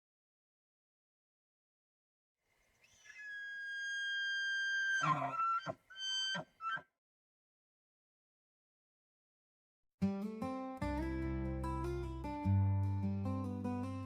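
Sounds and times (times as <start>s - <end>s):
short squealing whistles: 2.6s - 6.9s
elk bugling whistle: 2.8s - 6.8s.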